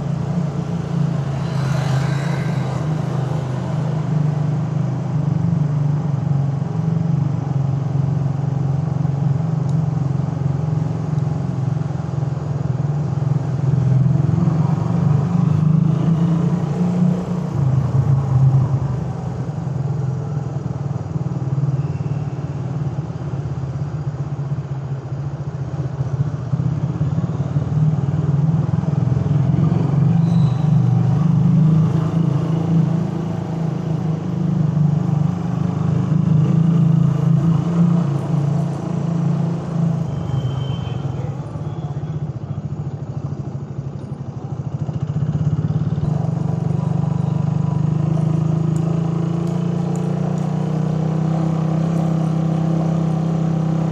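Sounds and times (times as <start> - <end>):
motorcycle engine running: 41.4 - 53.9.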